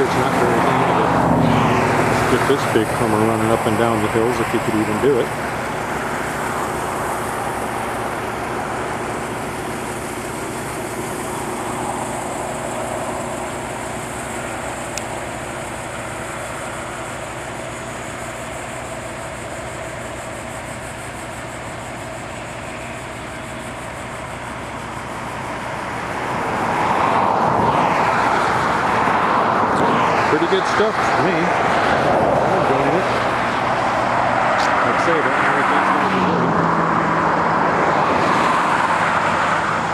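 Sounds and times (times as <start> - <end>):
grain auger rattling and hissing: 0.0 - 35.6
tractor engine running: 0.0 - 39.9.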